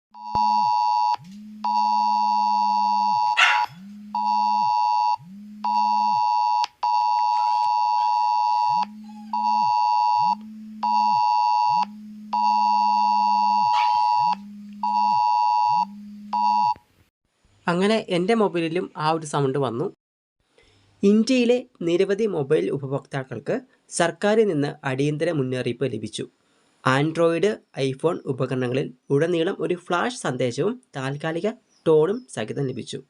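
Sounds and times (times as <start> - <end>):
phone vibration buzz: 0.2 - 16.8
shrill phone alert beeping: 0.2 - 16.8.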